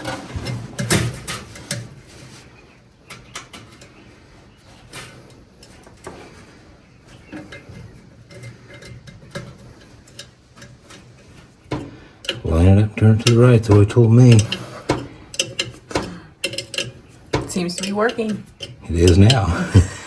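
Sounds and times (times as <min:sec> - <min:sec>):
hand tools clicking and tapping: 0:07.1 - 0:20.0.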